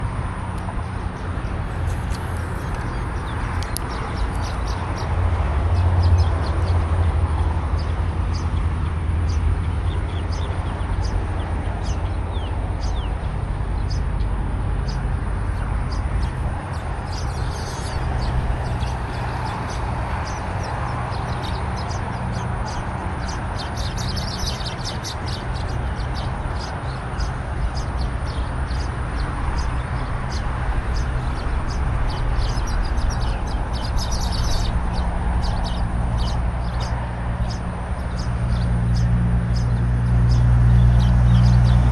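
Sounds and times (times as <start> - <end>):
birds chirping: 0.0 - 41.9.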